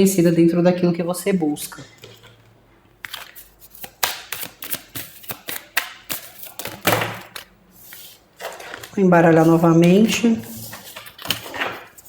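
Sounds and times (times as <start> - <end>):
tarot cards clicking and slapping: 3.0 - 9.0.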